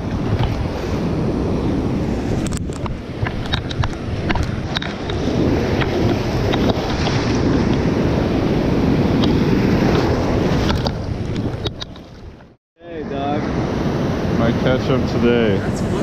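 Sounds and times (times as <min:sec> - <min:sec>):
ocean surf washing in: 0:00.0 - 0:11.7, 0:12.8 - 0:16.0
wind buffeting microphone: 0:00.0 - 0:16.0.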